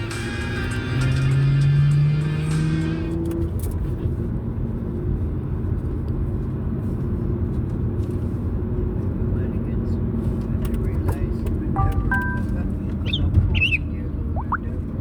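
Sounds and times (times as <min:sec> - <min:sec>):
phone ringtone melody: 0:11.8 - 0:12.6.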